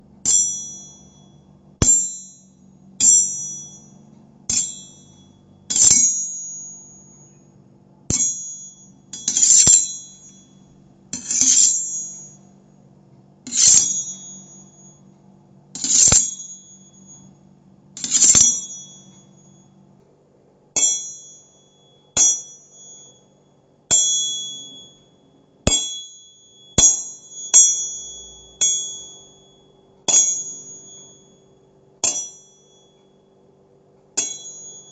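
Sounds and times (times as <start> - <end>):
metallic knife blade strikes: 1.8 - 2.4, 3.0 - 7.3, 8.1 - 10.6, 11.2 - 12.4, 13.5 - 15.0, 15.8 - 17.3, 18.0 - 19.2, 22.2 - 23.1, 25.7 - 26.2, 26.8 - 29.5, 30.1 - 31.2, 32.0 - 32.6, 34.2 - 34.9
knife blade scraping: 5.7 - 6.2, 9.2 - 10.4, 11.2 - 12.3, 13.5 - 14.9, 15.8 - 17.2, 18.0 - 19.0.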